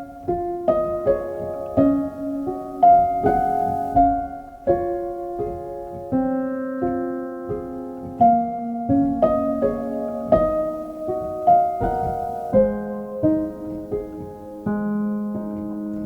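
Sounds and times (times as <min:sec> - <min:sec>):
gentle piano melody: 0:00.0 - 0:16.0.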